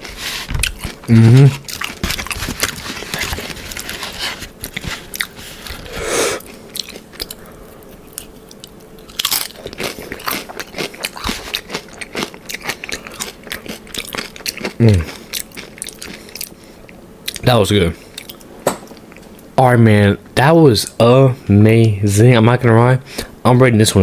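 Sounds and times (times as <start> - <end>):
crunching chips: 0.0 - 16.6.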